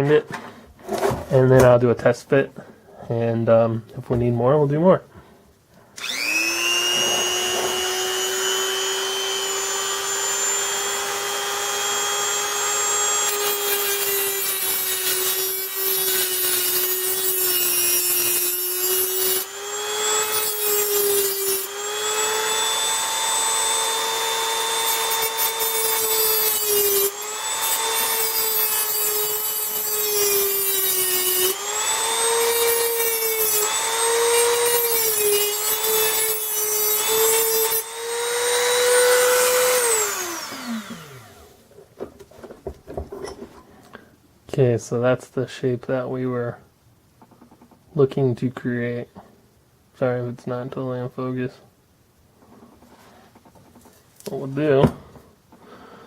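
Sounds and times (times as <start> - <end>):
rotary tool whining: 6.0 - 41.6.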